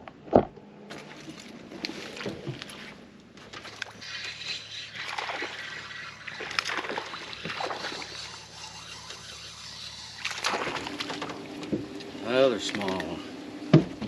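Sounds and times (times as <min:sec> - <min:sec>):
steady low hum: 0:00.0 - 0:14.0
fish splashing at surface: 0:00.9 - 0:11.6.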